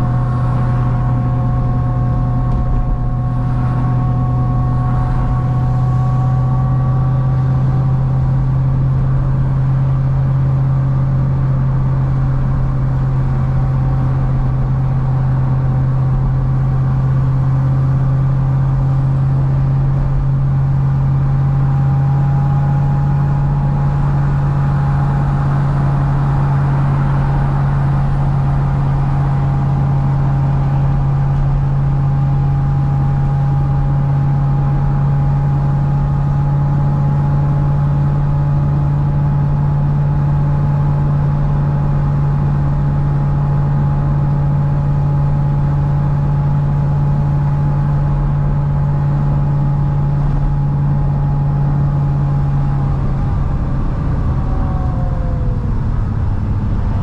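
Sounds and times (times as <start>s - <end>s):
car engine deep drone: 0.0s - 57.0s.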